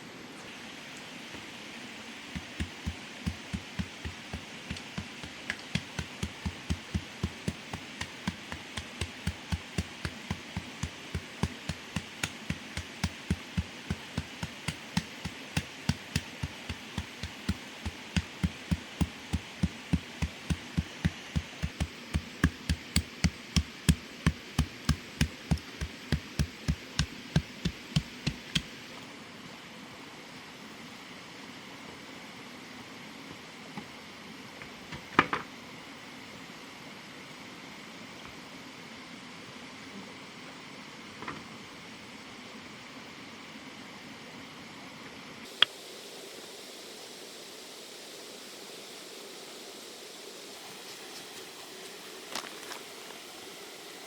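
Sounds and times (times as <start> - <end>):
high hiss: 45.5 - 54.0.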